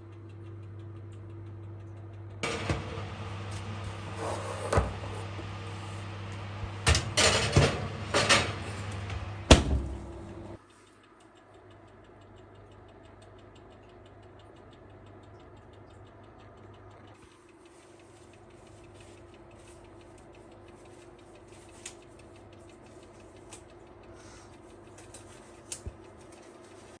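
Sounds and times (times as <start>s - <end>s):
faint fast ticking: 0.0s - 2.4s, 10.6s - 27.0s
small clicks: 0.0s - 2.6s, 10.2s - 27.0s
kitchen appliance humming: 2.4s - 10.6s.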